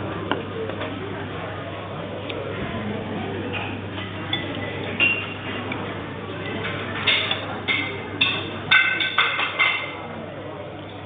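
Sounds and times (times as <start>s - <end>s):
low hum of dining room: 0.0s - 11.0s
cutlery clinking against plates: 3.5s - 5.5s, 6.4s - 10.0s.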